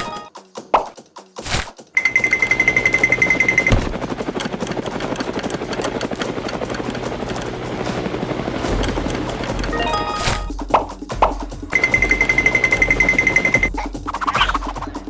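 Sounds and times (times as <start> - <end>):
machine motor chopping beat: 2.0 - 15.0.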